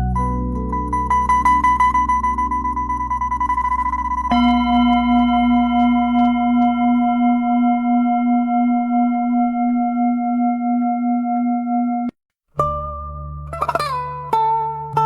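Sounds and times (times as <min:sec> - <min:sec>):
singing bowl ringing: 0:01.2 - 0:12.1.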